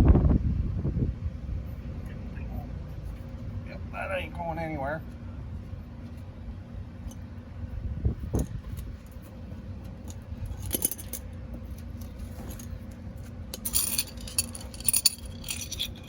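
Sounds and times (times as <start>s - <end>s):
low background rumble: 0.0s - 16.0s
metal hand tools clinking: 10.4s - 11.3s, 13.5s - 16.0s.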